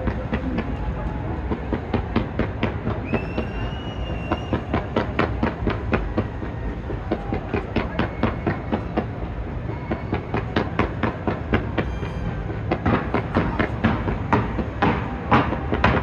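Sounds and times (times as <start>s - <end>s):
fireworks banging: 1.5s - 16.0s
high firework whistle: 3.0s - 4.9s.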